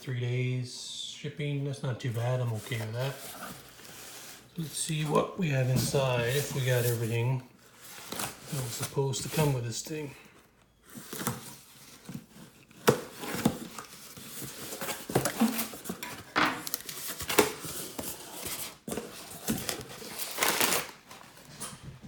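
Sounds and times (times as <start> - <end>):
packing material rustling: 10.8 - 21.5.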